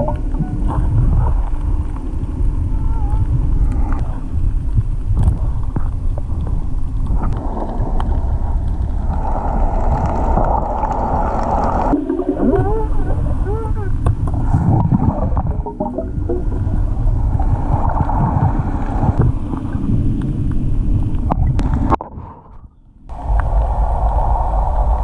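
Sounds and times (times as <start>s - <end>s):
bubbles hissing: 0.0s - 1.4s, 7.2s - 19.3s
underwater rumble of seawater: 0.0s - 25.0s.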